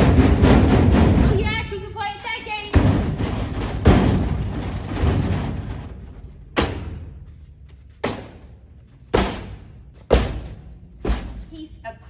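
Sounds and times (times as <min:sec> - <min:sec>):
clattering rattle: 0:02.7 - 0:07.0
thumps against vending machine: 0:02.7 - 0:07.2, 0:08.0 - 0:11.5.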